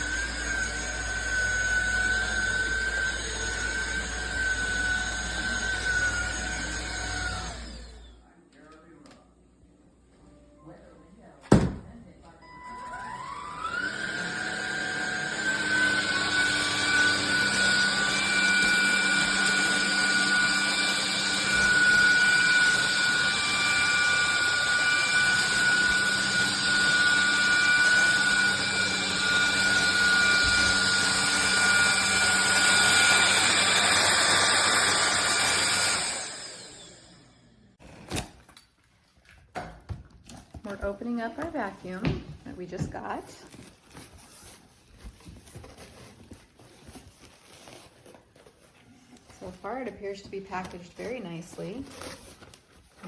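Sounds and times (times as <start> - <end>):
stick vacuum motor whine: 0.0 - 8.2, 12.7 - 38.4
vacuum motor winding down: 0.0 - 8.2, 12.9 - 37.8.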